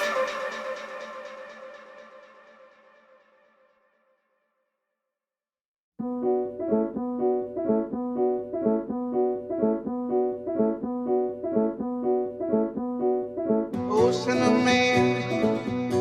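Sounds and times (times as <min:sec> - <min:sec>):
piano repeating pattern: 0:00.0 - 0:02.8, 0:06.0 - 0:16.0.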